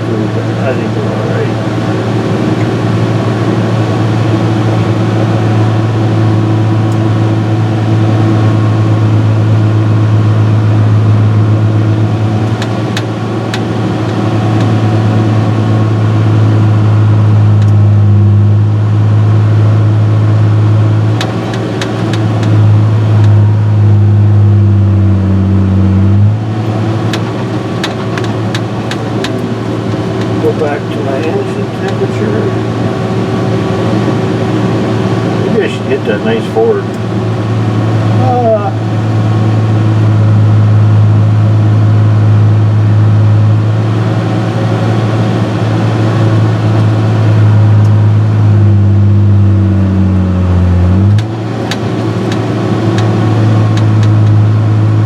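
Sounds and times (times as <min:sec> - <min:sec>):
diesel engine running: 0:00.0 - 0:55.0
sharp clicks: 0:27.1 - 0:30.4.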